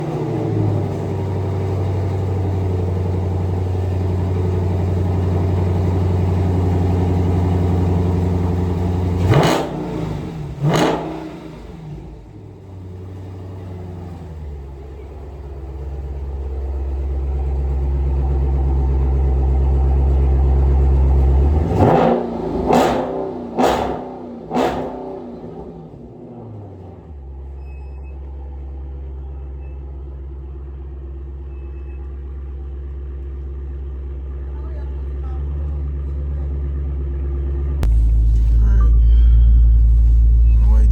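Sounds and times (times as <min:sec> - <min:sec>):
car engine revving: 0:00.0 - 0:27.3, 0:37.6 - 0:40.9.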